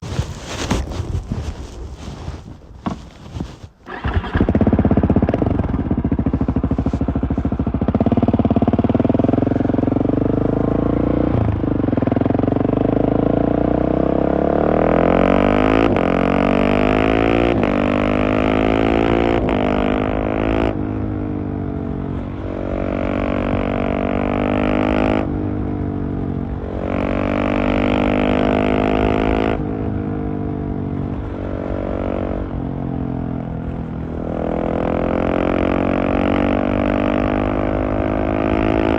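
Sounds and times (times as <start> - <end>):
quickshifter upshifts: 2.8 - 8.1
motorcycle engine accelerating: 3.8 - 38.9.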